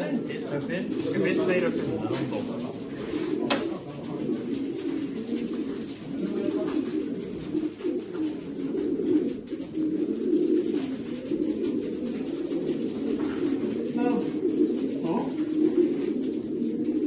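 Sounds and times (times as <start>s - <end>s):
pigeons cooing: 0.0s - 17.0s.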